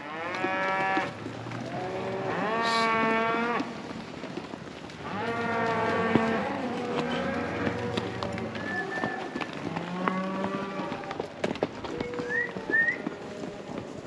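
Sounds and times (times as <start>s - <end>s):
cattle mooing: 0.0s - 3.8s, 5.0s - 11.2s.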